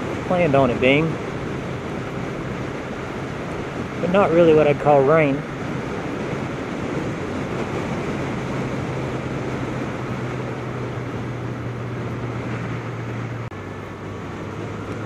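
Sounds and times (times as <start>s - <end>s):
motorcycle engine cruising: 0.0s - 15.0s
wind noise on microphone: 0.0s - 15.0s.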